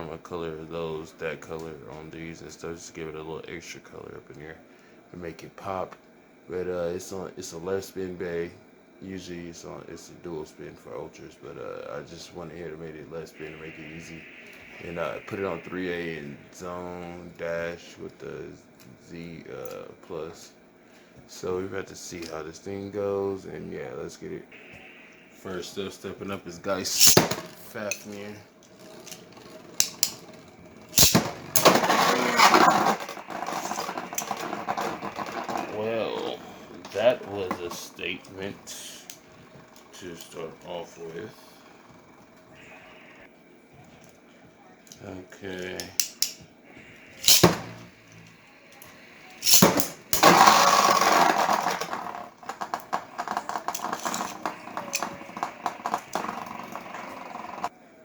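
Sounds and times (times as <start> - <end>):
spinning tops clashing: 26.9 - 27.6, 28.7 - 37.2, 47.2 - 48.2, 49.4 - 57.7
spinning top launcher clicks: 26.9 - 28.0, 28.8 - 35.8, 47.2 - 47.8, 49.4 - 57.7
tops rattling on plastic: 28.7 - 35.8, 49.4 - 57.7.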